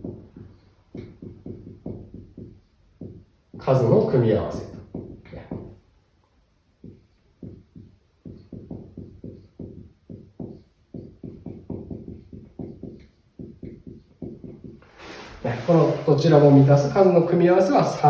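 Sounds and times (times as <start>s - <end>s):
writing taps on a board: 0.0s - 3.2s, 4.7s - 5.7s, 6.8s - 14.8s.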